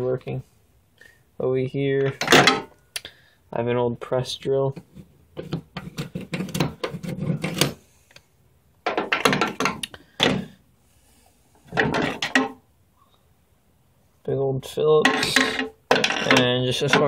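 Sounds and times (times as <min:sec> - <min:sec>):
metal tools rattling: 0:15.1 - 0:17.0.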